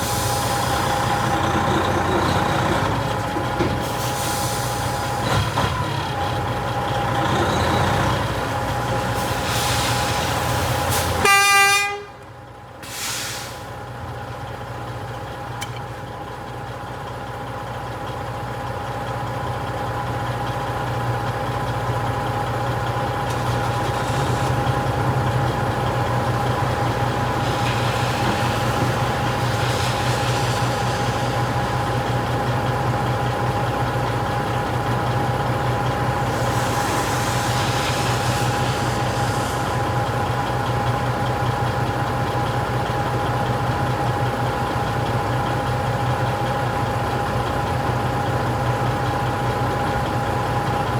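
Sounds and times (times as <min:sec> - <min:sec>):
diesel truck engine running: 0:00.0 - 0:50.9
truck horn blast: 0:10.9 - 0:12.4.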